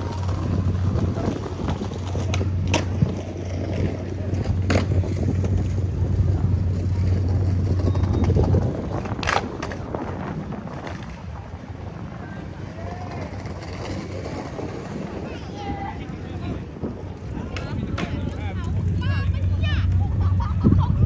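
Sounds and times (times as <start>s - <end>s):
low engine drone: 0.0s - 9.2s.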